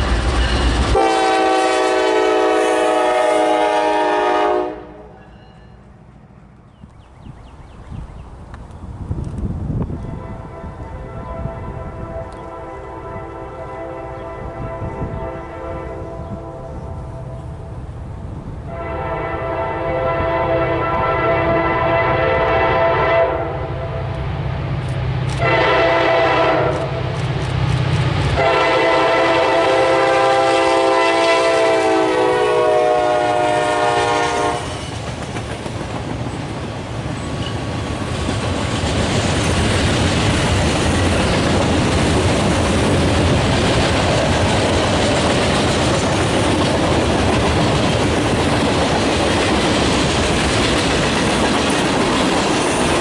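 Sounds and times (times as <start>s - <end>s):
train rumbling past on rails: 0.0s - 53.0s
train horn blasts: 0.9s - 5.9s, 10.0s - 17.2s, 18.7s - 24.0s, 25.4s - 27.0s, 28.4s - 35.0s.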